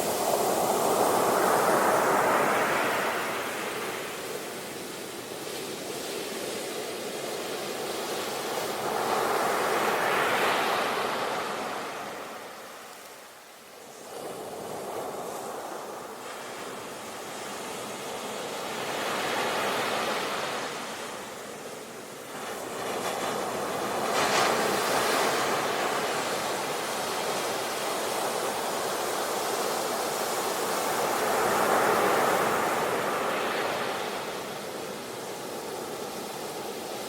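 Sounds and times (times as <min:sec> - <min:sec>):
sea waves breaking on shore: 0:00.0 - 0:37.0.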